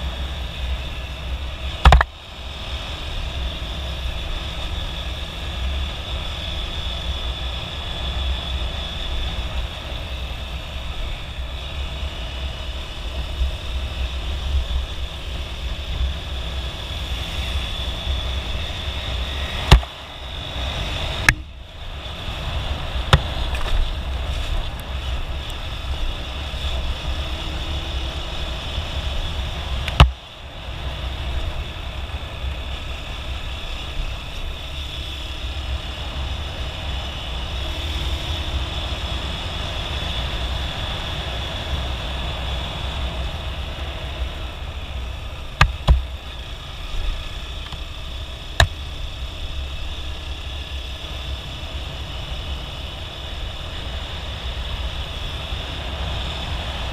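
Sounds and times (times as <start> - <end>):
motorcycle engine running: 0.0 - 56.9
sharp knocks: 1.8 - 2.1, 45.6 - 46.0.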